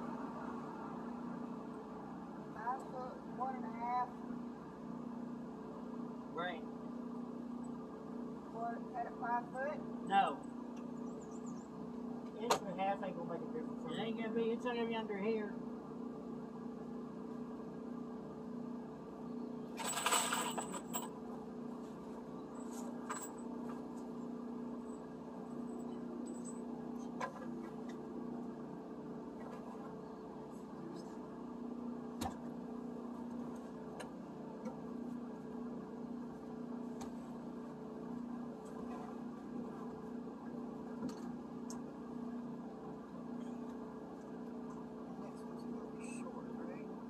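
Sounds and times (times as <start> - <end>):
steady low hum: 0.0 - 47.0
metallic jingling clatter: 19.8 - 21.2, 25.7 - 26.7.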